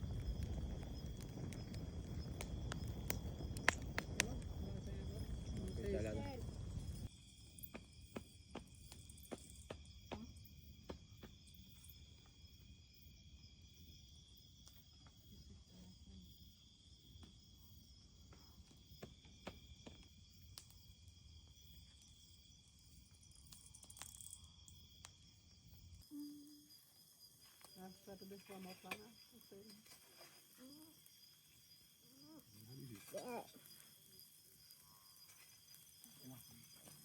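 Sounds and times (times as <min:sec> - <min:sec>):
low rumble: 0:00.0 - 0:07.1
insects trilling: 0:00.0 - 0:37.0.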